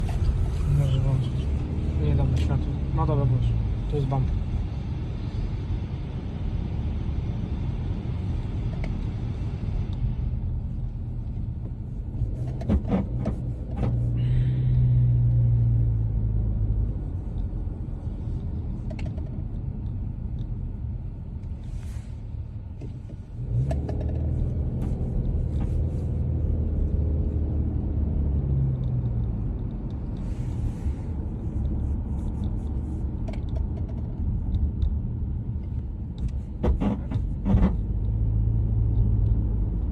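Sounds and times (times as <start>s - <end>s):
car road rumble: 0.0s - 39.9s
short sharp knocks over bumps: 36.2s - 38.1s.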